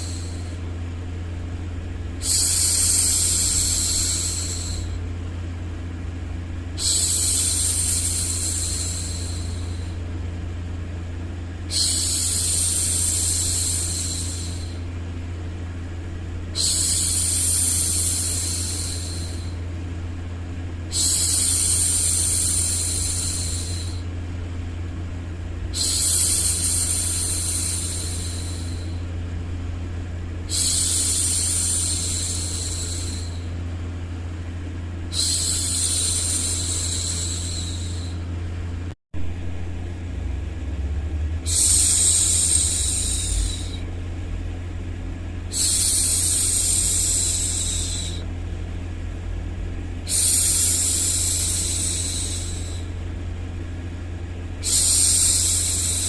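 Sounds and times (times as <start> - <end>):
white noise with low hum: 0.0 - 56.0
woman shushing: 41.4 - 43.9, 45.5 - 48.2, 50.1 - 52.9, 54.6 - 56.0.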